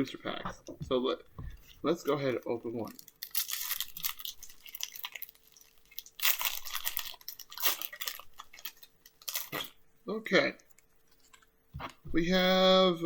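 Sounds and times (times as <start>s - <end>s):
foil card pack tearing and crinkling: 2.8s - 9.7s.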